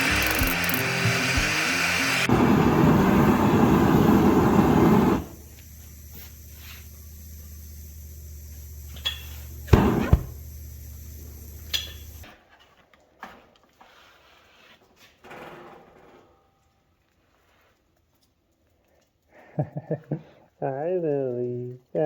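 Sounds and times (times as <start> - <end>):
mechanical hum: 0.0 - 12.3.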